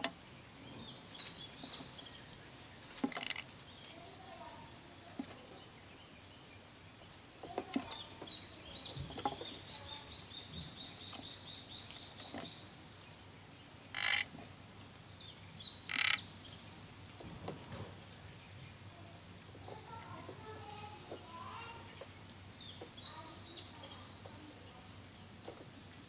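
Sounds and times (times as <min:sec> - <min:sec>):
frogs calling with high clicks: 0:03.0 - 0:03.6, 0:13.9 - 0:15.0, 0:15.8 - 0:16.3.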